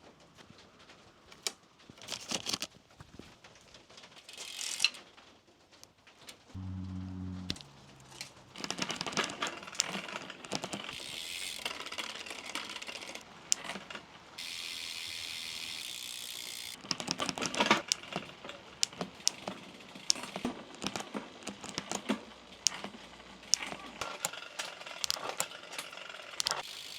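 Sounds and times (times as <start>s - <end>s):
bicycle chain clicking: 4.2s - 5.0s, 6.7s - 26.9s
freewheel ratchet buzz: 6.6s - 10.0s, 10.9s - 12.2s, 14.4s - 16.8s, 26.4s - 26.9s.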